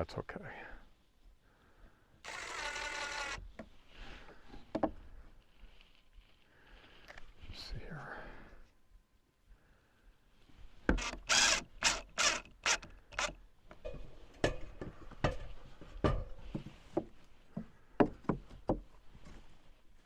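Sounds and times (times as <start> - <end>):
wood scraping strokes: 2.3 - 4.1, 10.9 - 13.3.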